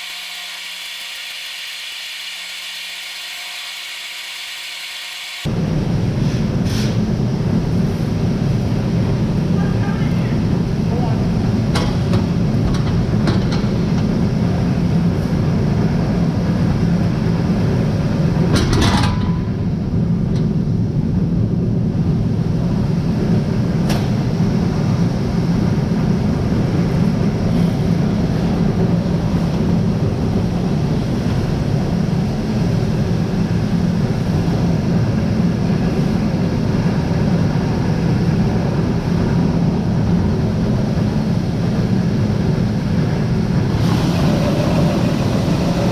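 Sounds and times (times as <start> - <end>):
grain unloading machinery droning: 0.0 - 5.5, 43.1 - 45.9.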